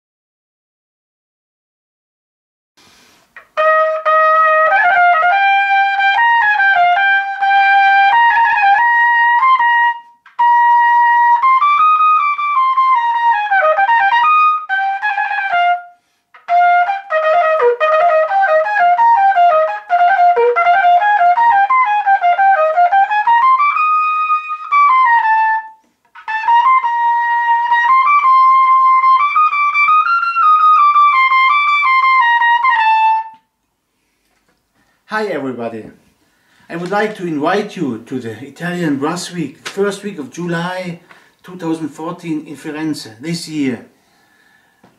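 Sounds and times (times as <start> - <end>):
solo trumpet melody: 3.4 - 33.5.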